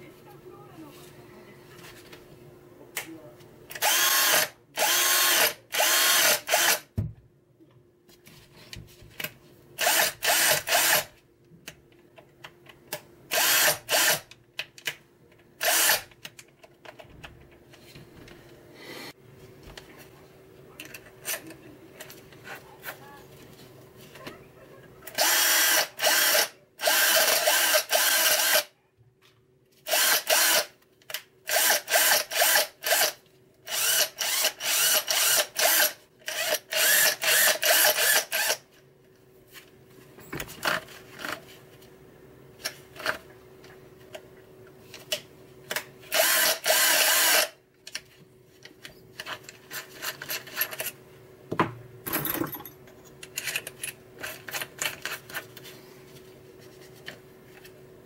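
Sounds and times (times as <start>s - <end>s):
electric drill motor: 3.7s - 6.9s, 9.8s - 11.1s, 13.3s - 14.3s, 15.6s - 16.1s, 25.1s - 28.7s, 29.9s - 30.7s, 31.5s - 38.6s, 46.1s - 47.6s
faint clicks and handling noises: 16.1s - 18.6s, 19.6s - 24.4s, 42.6s - 46.0s, 47.7s - 51.0s, 52.8s - 57.8s.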